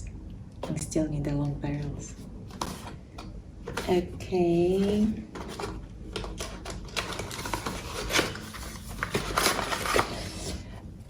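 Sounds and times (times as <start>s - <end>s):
packaging rustling: 2.2s - 4.0s, 4.7s - 10.6s.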